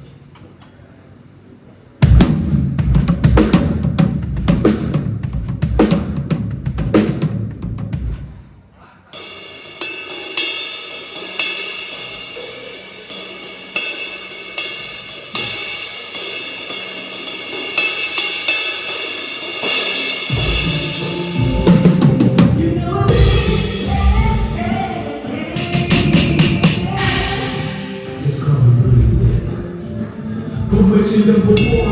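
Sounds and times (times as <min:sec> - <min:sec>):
kick drum and tom hits: 0:02.0 - 0:08.3, 0:20.3 - 0:24.7
cymbals and hi-hat ringing: 0:09.1 - 0:29.8, 0:30.6 - 0:31.9.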